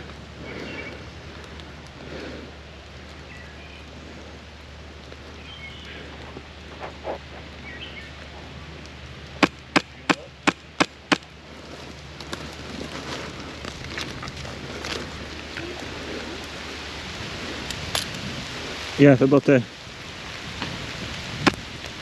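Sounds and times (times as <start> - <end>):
rain hissing: 0.0 - 22.0
airsoft gun shots: 9.4 - 11.2.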